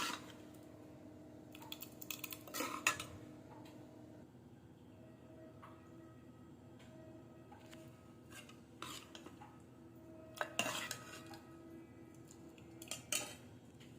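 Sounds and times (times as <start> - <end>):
metal spoon scraping steel pot: 0.0 - 0.4, 2.2 - 3.2, 8.2 - 9.6, 10.3 - 11.5, 12.7 - 13.5
steady low hum: 0.0 - 13.9.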